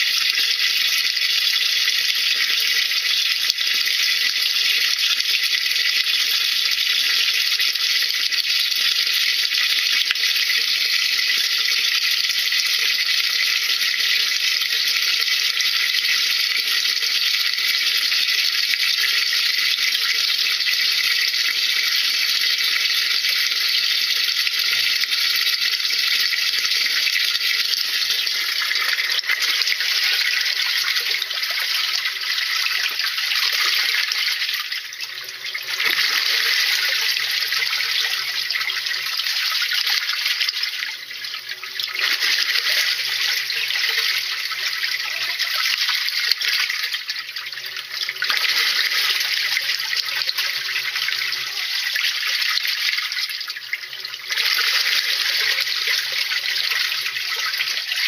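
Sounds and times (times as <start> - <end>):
water splashing in washing machine: 12.2 - 58.0.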